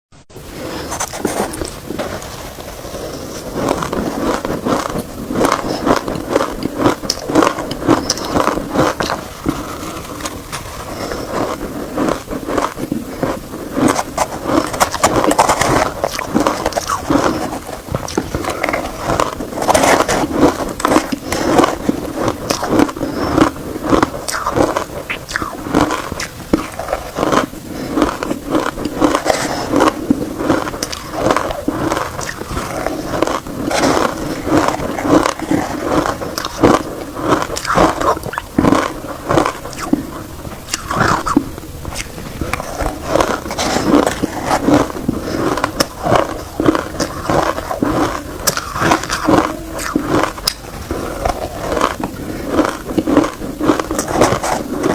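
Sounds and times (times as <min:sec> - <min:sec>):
shaved ice crunching: 0:00.8 - 0:54.9.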